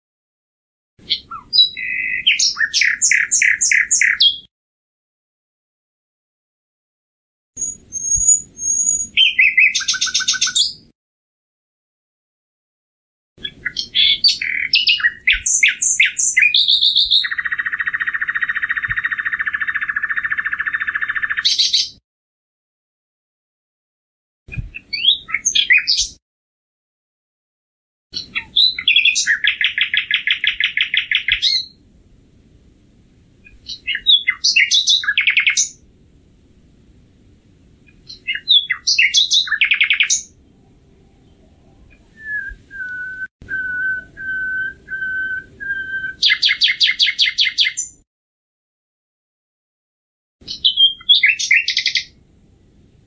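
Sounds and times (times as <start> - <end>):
nightingale singing trills: 1.0 - 4.5, 7.6 - 10.9, 13.4 - 22.0, 24.8 - 26.2, 28.2 - 31.8, 33.4 - 35.8, 37.9 - 48.0, 50.4 - 52.2
pure whistled bird notes: 1.0 - 4.5, 7.6 - 10.9, 13.4 - 22.0, 24.6 - 26.2, 28.2 - 31.8, 33.4 - 35.8, 37.9 - 48.0, 50.4 - 52.2.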